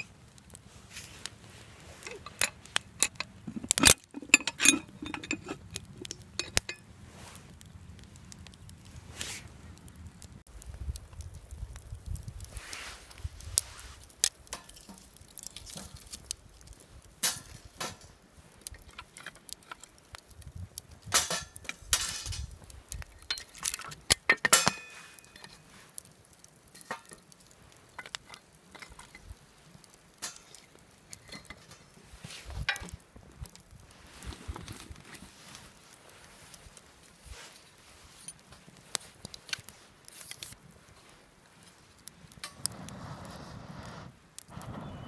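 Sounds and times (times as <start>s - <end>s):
metal cookware clinking: 2.0s - 6.8s, 24.4s - 25.5s.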